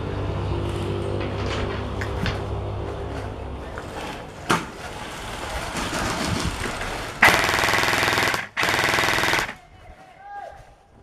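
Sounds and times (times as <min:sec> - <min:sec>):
airsoft gun full-auto burst: 0:07.2 - 0:09.6
airsoft gun shot: 0:07.2 - 0:09.6.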